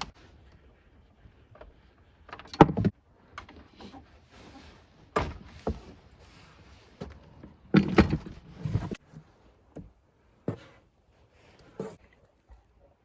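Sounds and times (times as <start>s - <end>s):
knocks and clunks: 1.6s - 3.9s, 5.1s - 6.0s, 7.0s - 9.1s.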